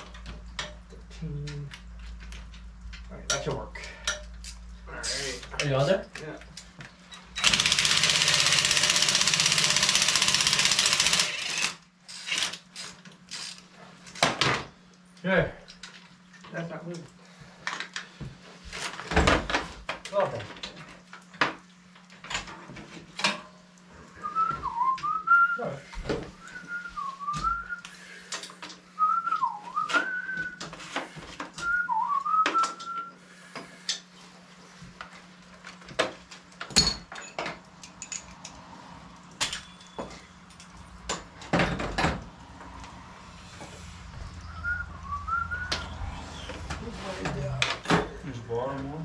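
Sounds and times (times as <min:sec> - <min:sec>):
impact wrench rattling: 0:07.4 - 0:12.4
person whistling a tune: 0:24.2 - 0:25.7, 0:26.4 - 0:27.9, 0:29.0 - 0:30.6, 0:31.6 - 0:33.2, 0:44.4 - 0:45.9
metal tools clinking: 0:36.7 - 0:38.6.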